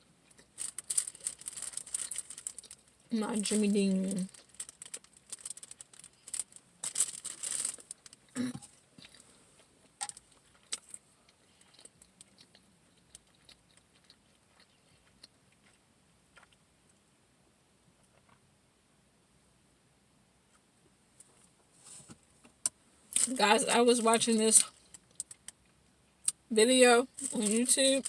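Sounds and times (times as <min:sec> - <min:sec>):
chewing with wet mouth clicks: 0:10.1 - 0:16.6.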